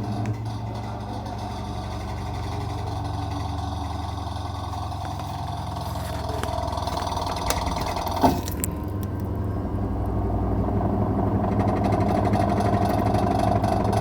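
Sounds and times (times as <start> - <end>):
washing machine gearbox drone: 0.0 - 14.0.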